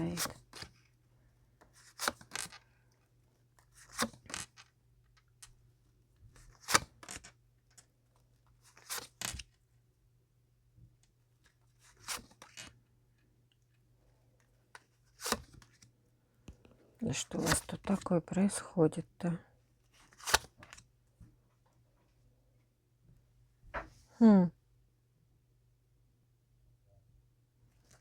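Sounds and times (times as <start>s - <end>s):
cards rasping and snapping: 1.7s - 2.6s, 3.7s - 4.7s, 6.4s - 7.3s, 8.7s - 9.4s, 11.8s - 12.7s, 15.1s - 15.9s, 20.0s - 20.8s.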